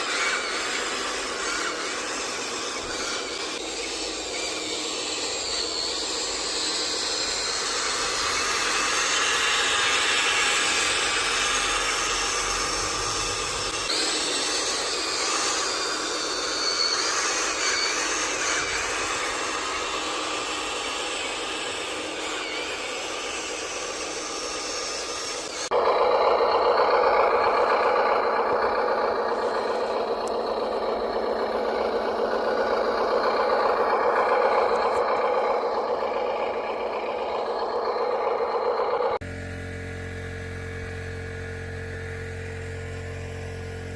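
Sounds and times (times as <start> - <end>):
small electric motors whining: 0.0 - 43.9.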